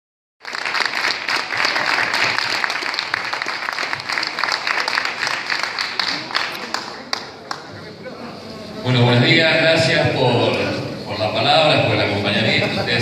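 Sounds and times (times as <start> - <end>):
crowd applauding: 0.4 - 7.8.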